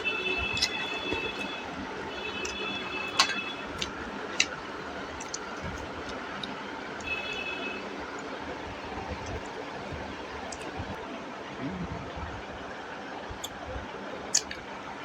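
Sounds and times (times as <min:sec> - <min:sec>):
mouth clicks chewing: 0:00.3 - 0:01.5.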